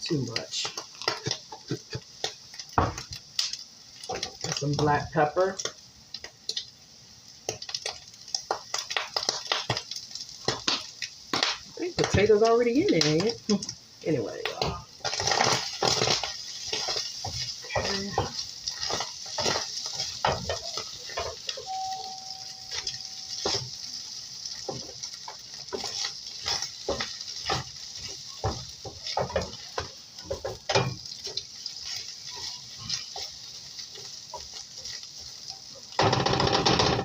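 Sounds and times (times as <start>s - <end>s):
food sizzling in a pan: 0.0s - 37.0s
utensil scraping and tapping a pan: 14.5s - 21.8s, 24.6s - 35.0s
short steady tone: 21.6s - 23.5s.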